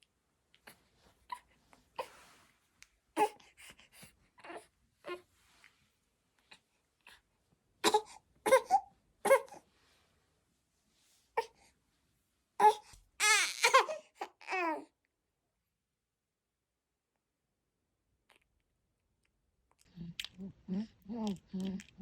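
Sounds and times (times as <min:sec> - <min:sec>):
baby crying: 0:12.6 - 0:14.9.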